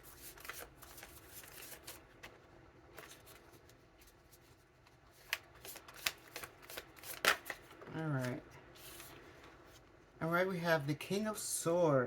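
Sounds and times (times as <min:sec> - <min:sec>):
cards rustling and riffling: 0:00.0 - 0:09.5.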